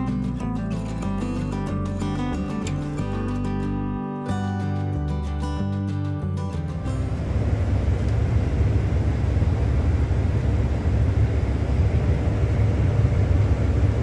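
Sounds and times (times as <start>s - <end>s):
guitar music: 0.0s - 8.9s
combine harvester running: 6.8s - 14.0s.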